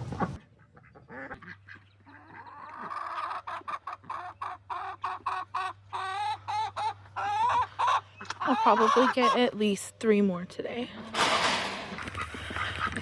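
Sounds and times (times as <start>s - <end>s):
chicken clucking: 0.0s - 9.6s.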